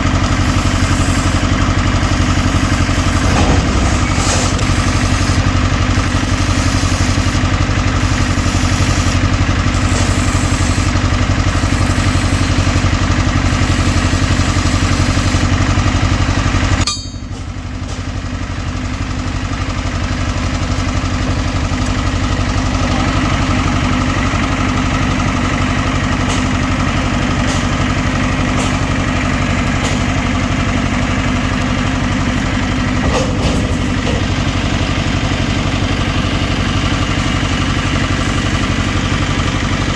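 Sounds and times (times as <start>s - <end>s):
engine running: 0.0s - 39.9s
high hiss: 2.0s - 5.4s.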